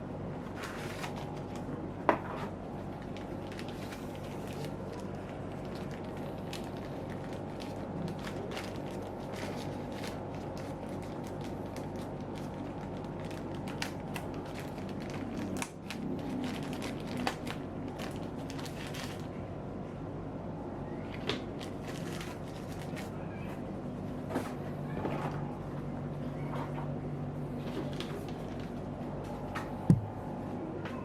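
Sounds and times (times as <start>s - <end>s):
steady low hum: 0.0s - 31.0s
laptop and packaging handling: 0.4s - 19.3s, 21.4s - 23.6s.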